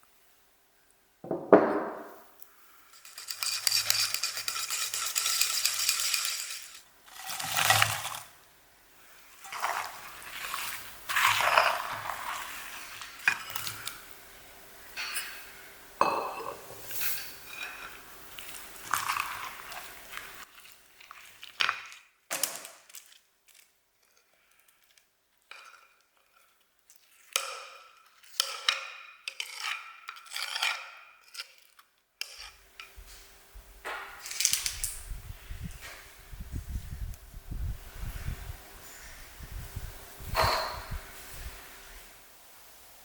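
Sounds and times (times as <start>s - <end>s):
utensils and dishes clinking: 3.0s - 8.2s.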